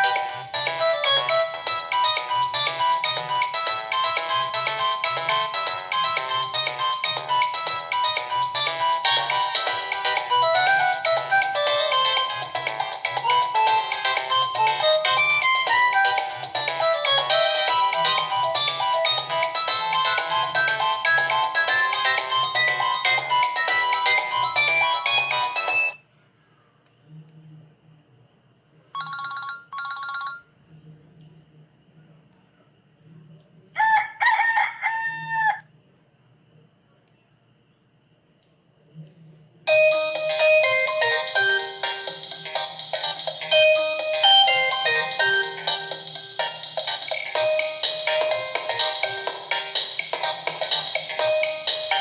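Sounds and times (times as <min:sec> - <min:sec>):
polyphonic phone ringtone: 0:00.0 - 0:26.0, 0:29.0 - 0:30.5, 0:39.7 - 0:52.0.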